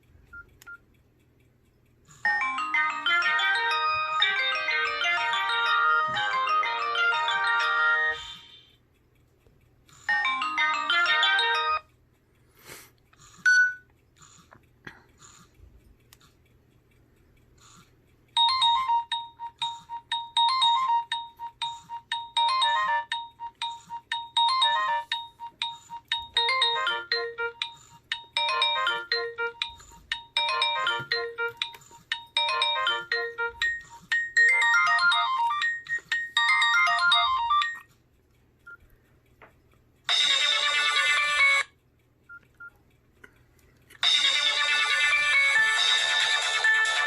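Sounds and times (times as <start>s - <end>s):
different ringtone: 2.2s - 8.8s, 10.1s - 11.9s, 13.5s - 13.9s, 18.4s - 37.9s, 40.1s - 41.8s, 44.0s - 47.0s
electronic ringtone tune: 2.3s - 8.7s, 10.1s - 11.9s, 18.4s - 37.9s, 40.1s - 41.7s, 44.0s - 47.0s.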